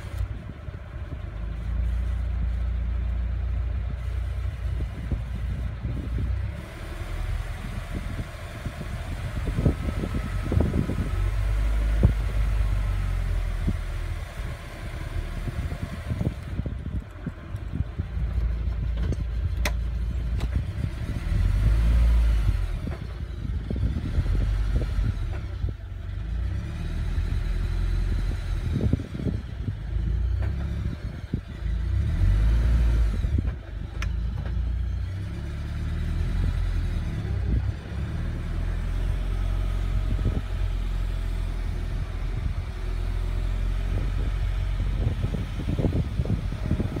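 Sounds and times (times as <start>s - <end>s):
car engine droning: 0.0s - 47.0s.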